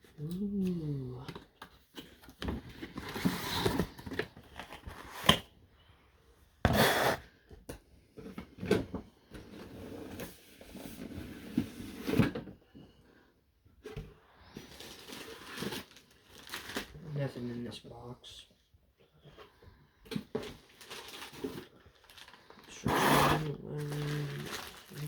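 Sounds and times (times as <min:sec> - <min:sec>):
cardboard rustling and scraping: 0:01.4 - 0:05.5, 0:08.2 - 0:12.5.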